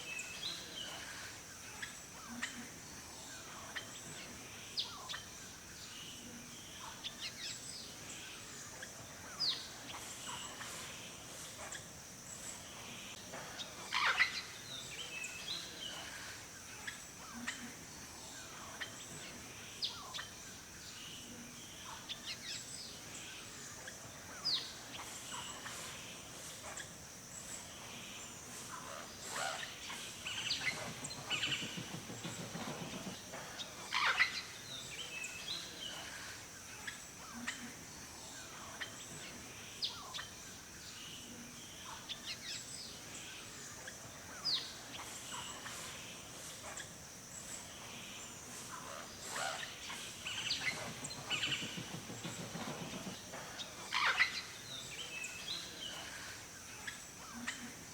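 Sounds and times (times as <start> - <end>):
steady high hiss: 0.0 - 57.9
songbirds chirping and whistling: 17.9 - 37.2, 37.9 - 57.4.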